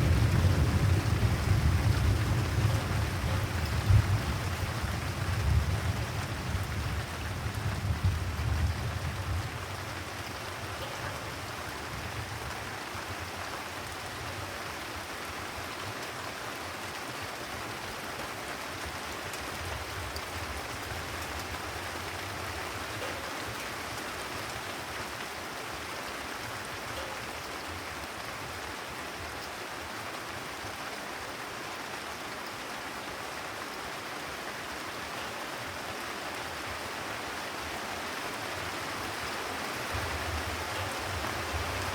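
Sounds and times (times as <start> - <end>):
low thunder rumble: 0.0 - 9.8
rain falling on a terrace: 0.0 - 41.9.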